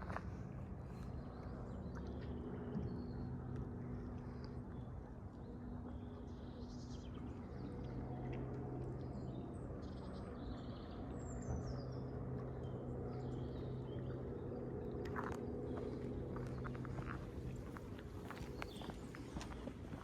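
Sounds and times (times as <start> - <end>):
steady low hum: 0.0 - 20.0
low rumble: 7.1 - 19.3
small birds chirping: 9.1 - 19.7.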